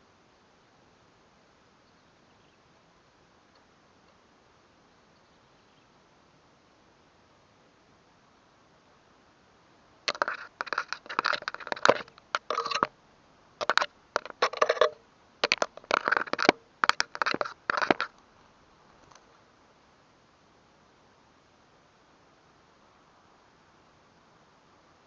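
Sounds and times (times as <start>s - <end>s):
crackling crunching rustle: 10.1s - 12.9s, 13.6s - 19.4s.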